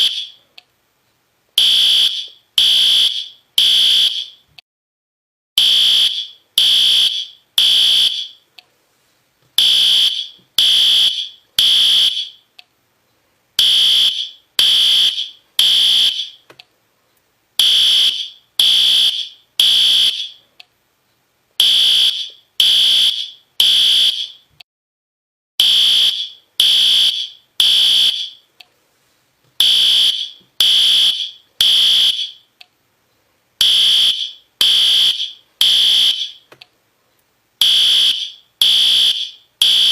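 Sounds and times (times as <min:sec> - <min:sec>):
fire alarm horn blasts: 0:00.0 - 0:00.4, 0:01.6 - 0:04.4, 0:05.6 - 0:08.4, 0:09.6 - 0:12.4, 0:13.6 - 0:16.4, 0:17.6 - 0:20.4, 0:21.6 - 0:24.4, 0:25.6 - 0:28.4, 0:29.6 - 0:32.4, 0:33.6 - 0:36.4, 0:37.6 - 0:39.9.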